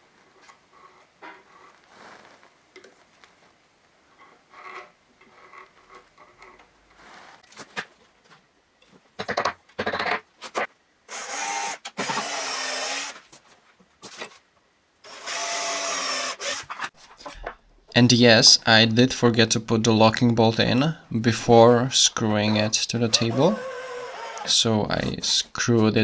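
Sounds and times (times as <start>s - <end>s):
drill driving screws into wood: 11.1s - 13.2s, 15.0s - 16.9s, 23.0s - 24.5s.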